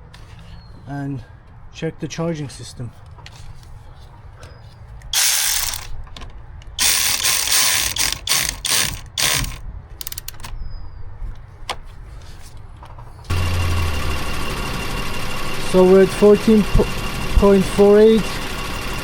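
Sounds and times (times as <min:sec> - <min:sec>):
ratchet wrench clicking: 0:05.2 - 0:05.9, 0:06.8 - 0:10.5.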